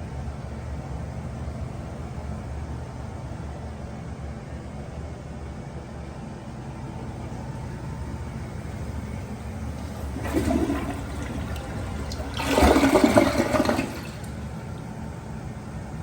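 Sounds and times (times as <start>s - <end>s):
steady low hum: 0.0s - 16.0s
toilet flushing: 7.0s - 16.0s.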